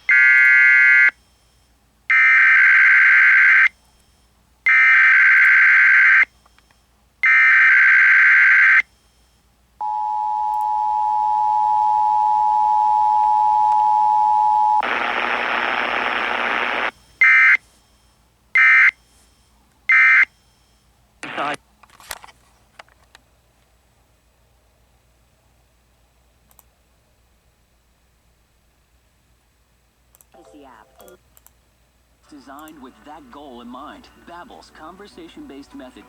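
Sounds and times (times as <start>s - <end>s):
data bursts: 14.4s - 16.9s
static hiss: 14.8s - 17.0s, 21.2s - 21.6s.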